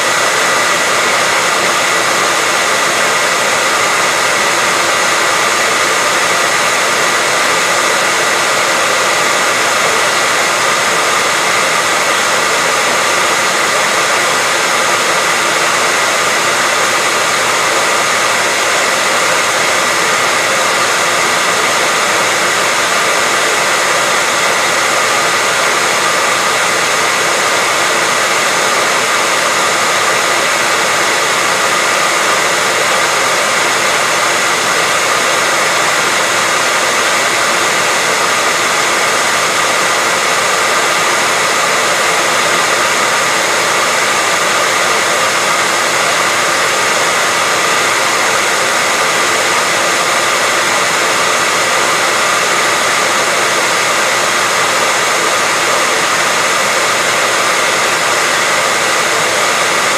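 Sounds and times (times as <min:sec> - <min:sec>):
hair dryer running: 0:00.0 - 0:59.9.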